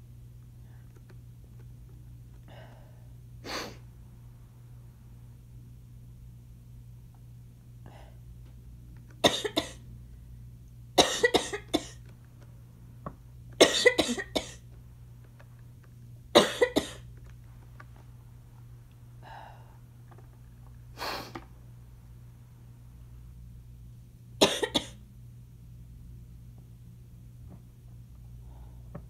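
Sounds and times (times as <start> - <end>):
woman coughing: 9.2 - 9.8, 11.0 - 12.0, 13.6 - 14.6, 16.4 - 17.1, 24.4 - 25.0
faint breaths: 28.3 - 29.0.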